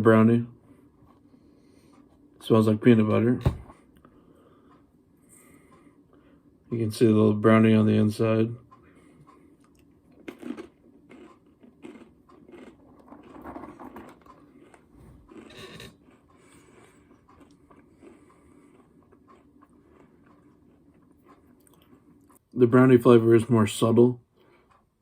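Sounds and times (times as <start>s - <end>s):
person chewing: 9.0s - 22.5s.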